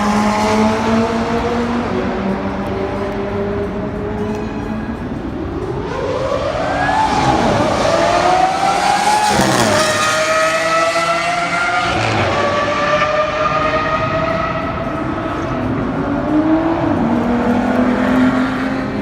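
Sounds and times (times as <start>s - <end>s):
supercar engine accelerating: 0.0s - 4.2s, 4.8s - 19.0s.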